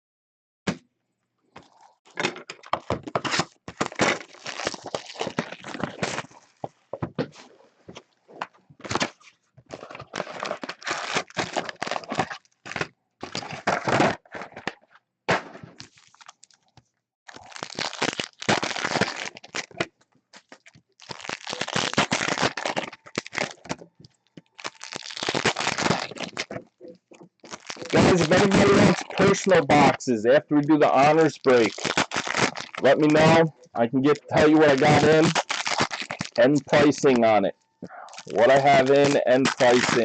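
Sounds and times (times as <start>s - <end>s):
foil wrappers tearing and crinkling: 2.6s - 6.6s, 8.8s - 14.8s, 15.8s - 16.7s, 17.3s - 26.6s, 27.4s - 30.0s, 31.0s - 33.4s, 34.3s - 37.2s, 38.1s - 40.0s.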